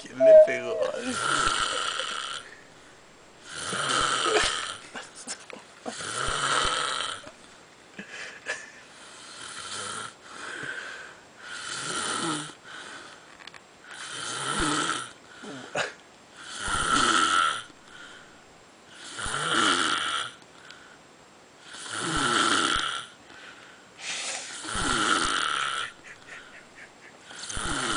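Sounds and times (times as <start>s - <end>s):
man snoring: 0.2s - 2.6s, 3.4s - 4.8s, 5.9s - 7.3s, 9.0s - 10.8s, 11.4s - 12.6s, 13.9s - 15.7s, 16.4s - 17.7s, 18.9s - 20.4s, 21.6s - 23.2s, 24.1s - 26.3s, 27.2s - 27.9s
soft breaths: 10.2s - 11.6s, 12.6s - 14.1s, 20.5s - 21.2s, 23.2s - 24.9s.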